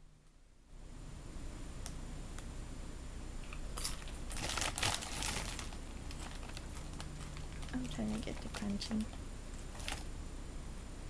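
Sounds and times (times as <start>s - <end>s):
tortilla chip crunching: 3.4s - 8.2s.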